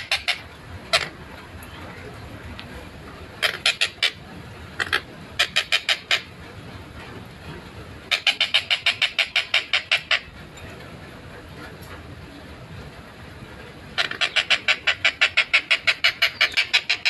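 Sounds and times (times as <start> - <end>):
kingfisher calling: 0.0 - 1.2, 3.4 - 4.2, 4.8 - 6.3, 8.1 - 10.3, 14.0 - 17.0.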